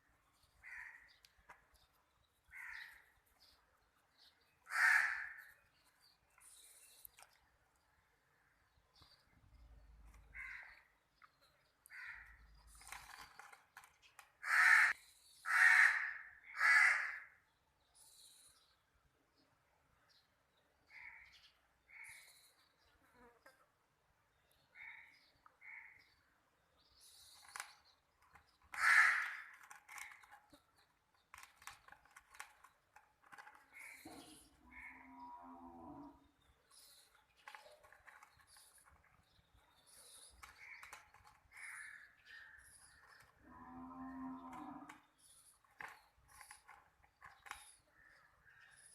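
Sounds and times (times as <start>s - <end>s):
bird harsh calls: 0.5s - 1.5s, 2.5s - 3.1s, 4.6s - 5.7s, 14.4s - 17.4s, 27.0s - 30.6s, 33.3s - 39.1s
scattered clicks: 37.1s - 41.6s.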